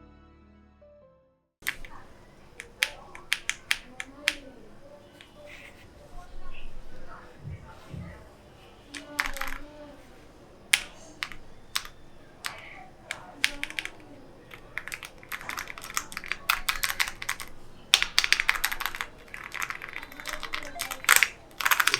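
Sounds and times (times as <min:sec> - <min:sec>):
typing on mechanical keyboard: 0:01.6 - 0:05.9, 0:08.8 - 0:21.9.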